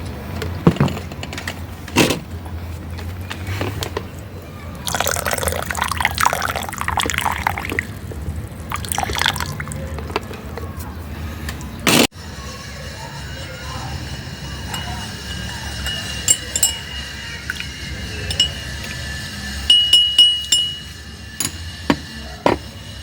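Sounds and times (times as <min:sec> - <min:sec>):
kitchenware clinking: 0:12.8 - 0:23.0.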